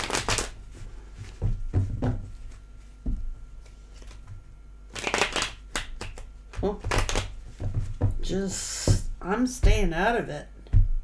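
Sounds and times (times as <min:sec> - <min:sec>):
cards shuffling: 0:00.0 - 0:00.6, 0:03.6 - 0:04.3, 0:04.9 - 0:07.9
cards thumping on table: 0:05.0 - 0:09.9.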